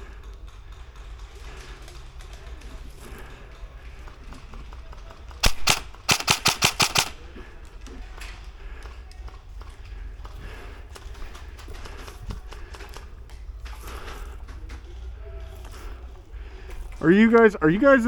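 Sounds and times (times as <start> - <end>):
airsoft rifle firing: 5.4 - 7.5.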